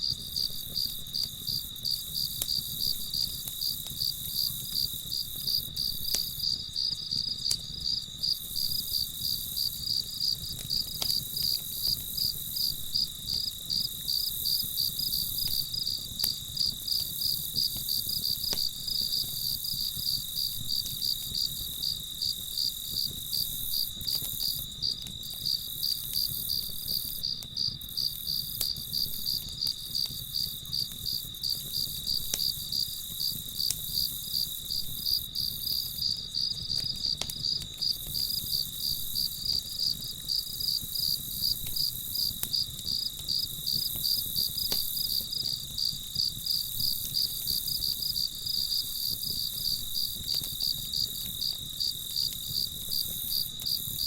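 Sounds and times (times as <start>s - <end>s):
crickets chirping: 0.0s - 54.0s.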